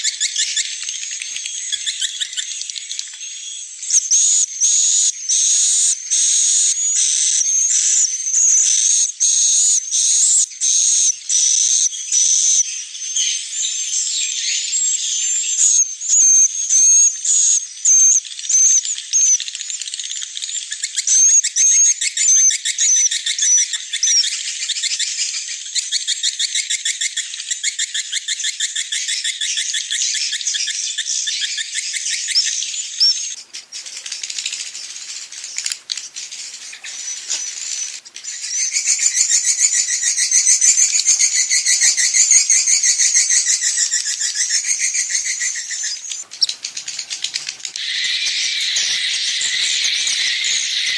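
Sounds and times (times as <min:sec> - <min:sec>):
swiftlets twittering: 0:32.4 - 0:37.2, 0:44.4 - 0:50.9.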